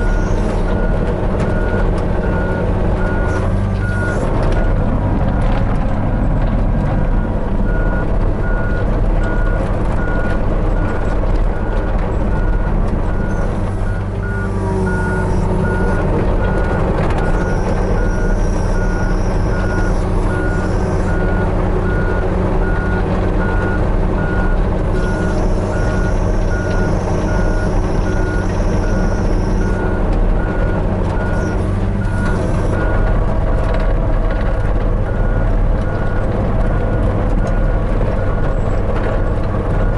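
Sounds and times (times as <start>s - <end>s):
excavator diesel engine running: 0.0s - 39.9s
alarm beeping: 13.2s - 22.1s.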